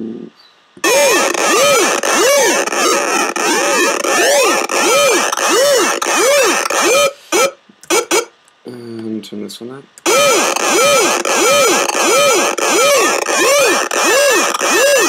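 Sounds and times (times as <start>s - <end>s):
harsh wobbling synth: 0.8s - 8.3s, 10.0s - 15.0s
short synth stabs: 0.8s - 8.3s, 10.0s - 15.0s.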